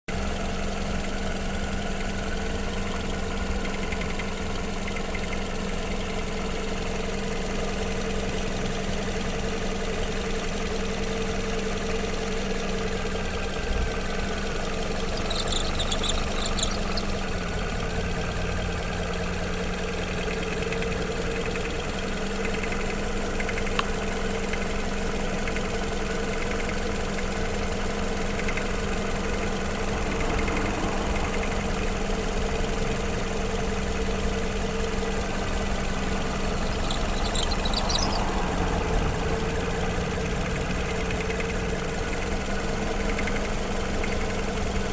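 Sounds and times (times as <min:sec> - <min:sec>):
car engine idling: 0:00.1 - 0:44.9
belt tensioner pulley rattling: 0:15.0 - 0:17.8, 0:32.2 - 0:44.9.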